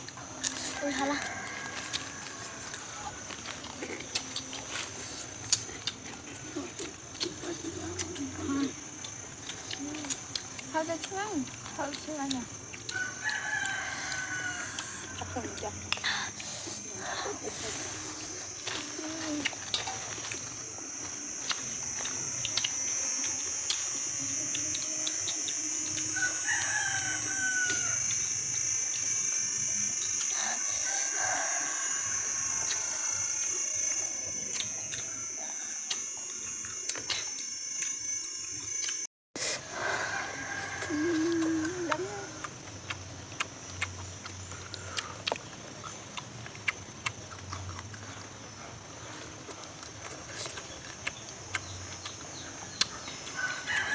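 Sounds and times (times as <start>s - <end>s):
high-pitched hiss: 0.0s - 46.0s
rooster crowing: 0.4s - 3.7s, 12.8s - 18.9s, 20.8s - 36.1s, 39.6s - 42.5s, 52.3s - 53.9s
high-pitched drone: 14.7s - 39.1s.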